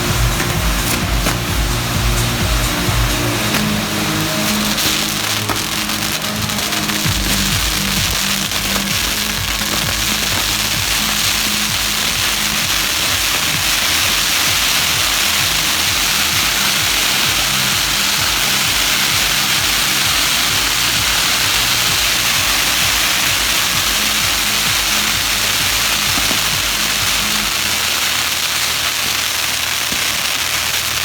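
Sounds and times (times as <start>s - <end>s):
music with low notes: 0.0s - 30.4s
firework wheels hissing: 0.0s - 31.0s.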